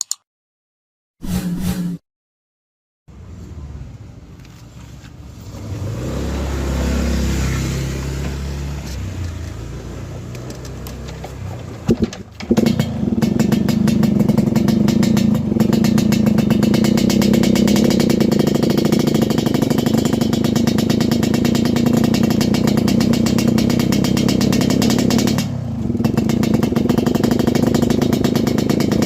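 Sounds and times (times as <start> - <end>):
motorcycle engine running: 5.6 - 29.0
exhaust pops: 8.0 - 29.0.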